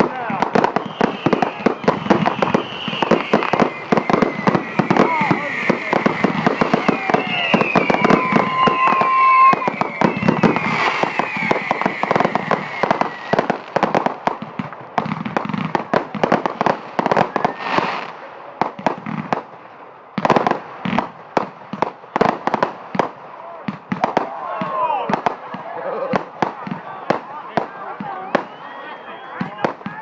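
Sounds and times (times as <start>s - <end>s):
fireworks bangs and crackles: 0.0s - 30.0s
falling whistles: 0.7s - 13.4s, 17.2s - 17.9s, 28.1s - 29.6s.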